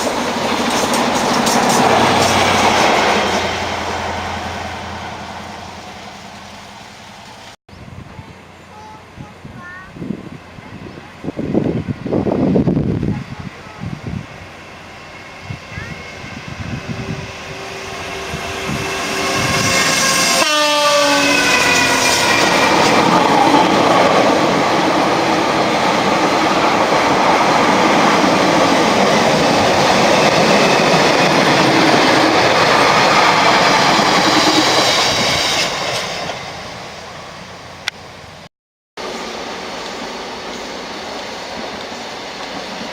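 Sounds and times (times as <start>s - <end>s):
train horn: 15.4s - 22.6s.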